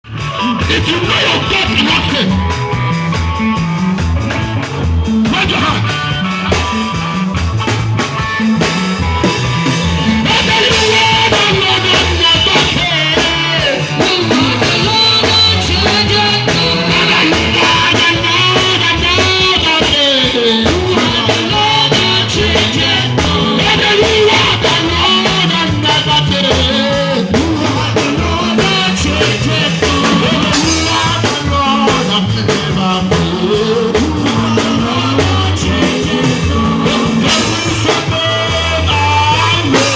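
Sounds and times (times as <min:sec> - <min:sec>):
rock band playing: 0:00.0 - 0:39.9
person singing: 0:08.5 - 0:39.9.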